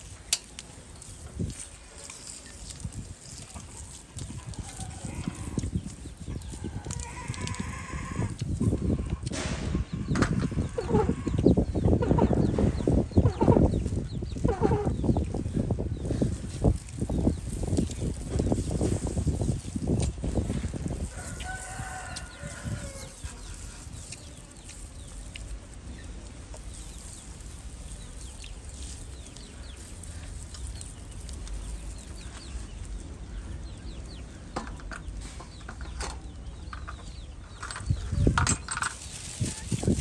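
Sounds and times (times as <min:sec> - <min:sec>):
chickens calling and clucking: 0:03.3 - 0:15.2.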